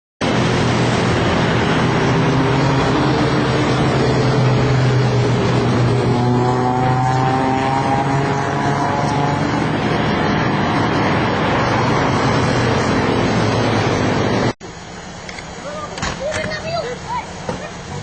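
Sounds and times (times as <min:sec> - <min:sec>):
rough noise: 0:00.2 - 0:16.8
high whine: 0:00.2 - 0:18.0
vehicle engine running under load: 0:00.2 - 0:18.0.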